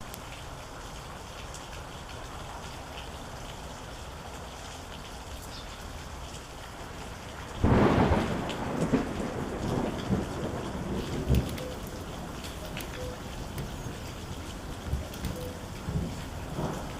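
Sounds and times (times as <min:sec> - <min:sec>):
steady rain falling: 0:00.0 - 0:16.9
thunder clap and rumble: 0:07.4 - 0:16.9.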